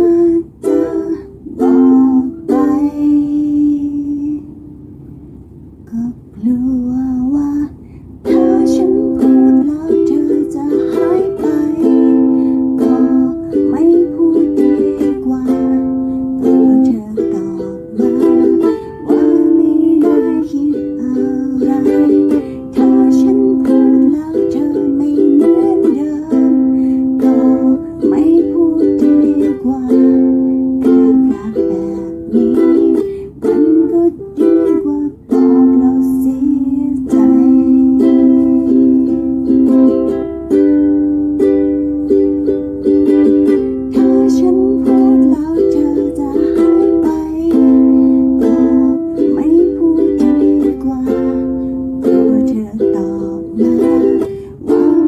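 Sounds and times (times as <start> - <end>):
ukulele strumming chords: 0.0 - 55.0.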